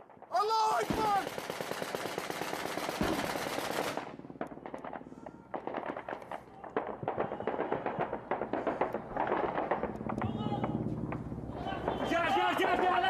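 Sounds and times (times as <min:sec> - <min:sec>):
scattered gunshots: 0:00.0 - 0:13.0
automatic gunfire: 0:00.7 - 0:10.7.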